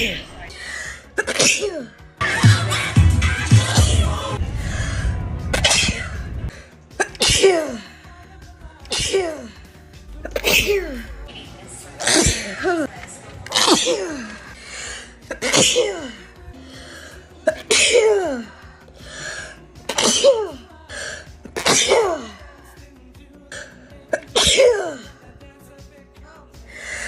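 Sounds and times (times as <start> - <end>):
woman sneezing: 7.0 - 7.8, 8.9 - 9.5, 12.0 - 12.9, 19.9 - 20.6, 21.6 - 22.4
breathy intake: 14.1 - 15.3.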